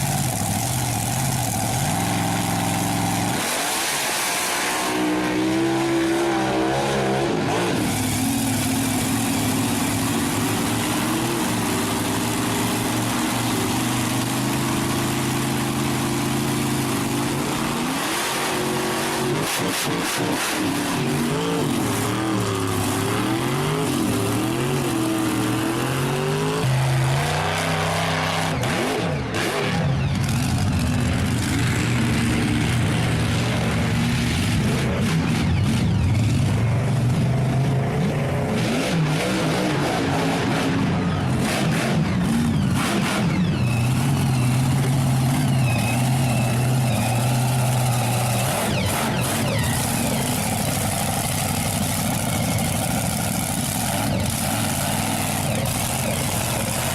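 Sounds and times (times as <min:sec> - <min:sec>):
monster truck engine revving: 0:00.0 - 0:56.9.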